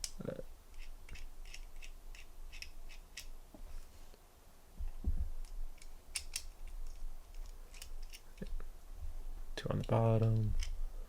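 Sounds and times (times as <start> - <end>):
lighter parts clicking: 5.4 - 6.6.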